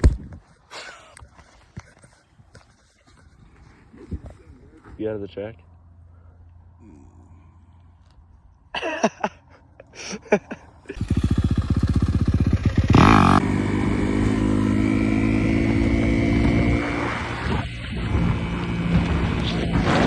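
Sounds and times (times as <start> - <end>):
dirt bike engine sputtering and running: 10.9 - 20.0.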